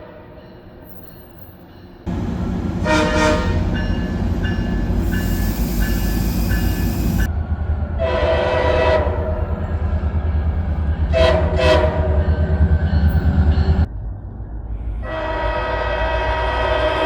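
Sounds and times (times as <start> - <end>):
train rumble: 2.0 - 17.0
locomotive horn blast: 2.1 - 7.3, 8.0 - 9.5, 11.1 - 12.1, 15.0 - 17.0
loud hiss: 3.5 - 7.3.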